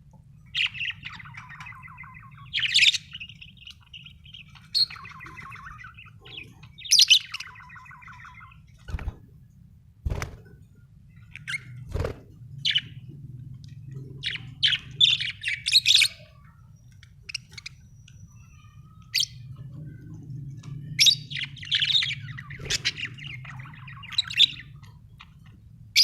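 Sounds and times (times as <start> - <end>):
budgerigars chattering: 21.0 - 25.4.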